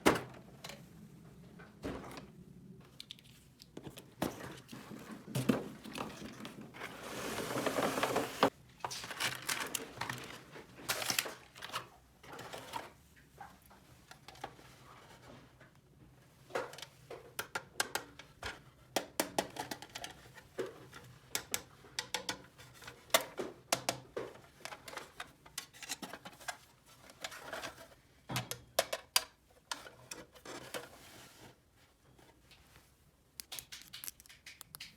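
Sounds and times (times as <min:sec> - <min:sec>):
packaging crinkling: 0:33.4 - 0:34.9
plastic toy pieces clicking: 0:33.4 - 0:34.9.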